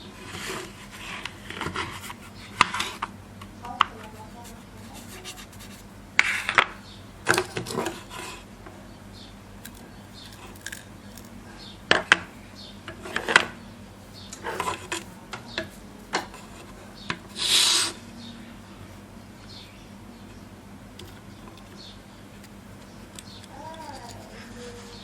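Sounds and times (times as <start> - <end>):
scraping rubs: 0.0 - 3.1, 4.0 - 6.6, 7.5 - 8.5, 14.1 - 18.0
rasping scrape: 4.2 - 6.5, 7.6 - 8.5, 16.2 - 18.0
clicks and knocks of small objects: 9.6 - 12.3.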